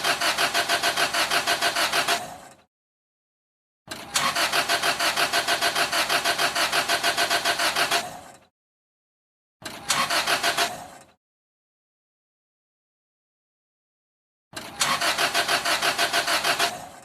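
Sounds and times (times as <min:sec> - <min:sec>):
car engine cranking by starter: 0:00.0 - 0:02.7, 0:03.9 - 0:08.5, 0:09.6 - 0:11.2, 0:14.6 - 0:17.0.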